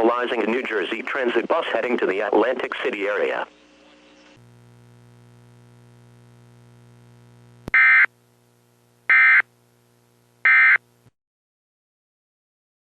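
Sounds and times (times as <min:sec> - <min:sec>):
faint low hum: 0:00.0 - 0:11.1
digital data tone bursts: 0:07.7 - 0:08.1, 0:09.1 - 0:09.4, 0:10.5 - 0:10.8.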